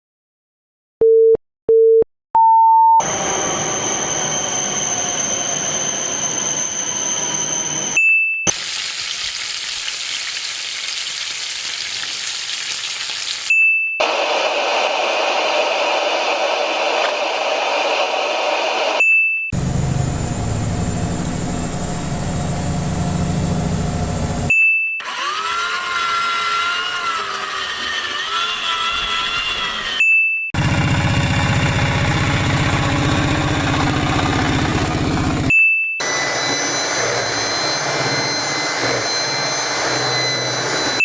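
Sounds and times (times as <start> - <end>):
steady hissing sound: 19.6 - 24.5.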